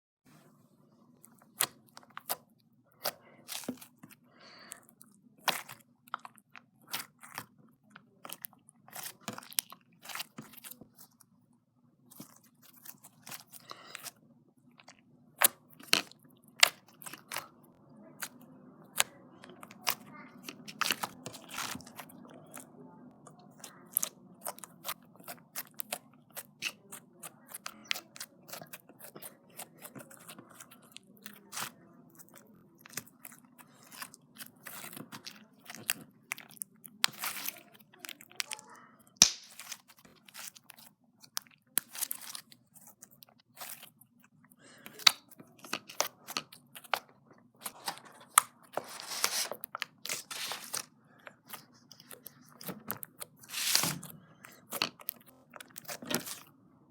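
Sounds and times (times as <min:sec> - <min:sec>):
slime being squished by hand: 0:01.3 - 0:04.2, 0:08.2 - 0:11.0, 0:18.2 - 0:22.6, 0:23.5 - 0:44.0.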